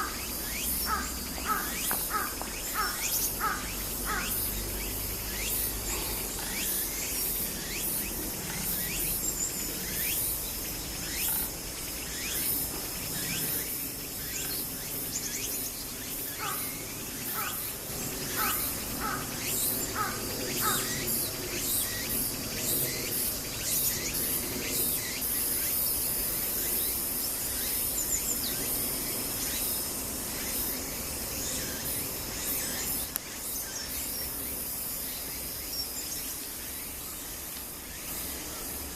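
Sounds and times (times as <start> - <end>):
birds calling: 0.0 - 8.9, 16.2 - 21.4
insects chirring: 0.0 - 38.9.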